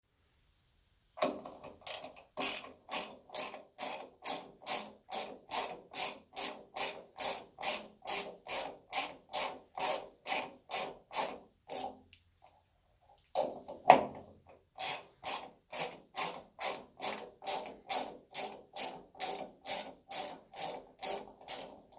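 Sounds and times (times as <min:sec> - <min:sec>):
mechanical ratcheting: 0:01.8 - 0:12.0, 0:14.8 - 0:21.8.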